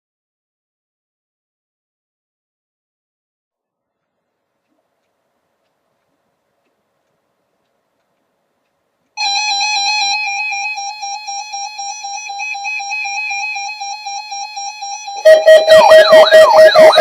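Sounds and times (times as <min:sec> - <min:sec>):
pulsing electronic alert tone: 0:10.5 - 0:17.0.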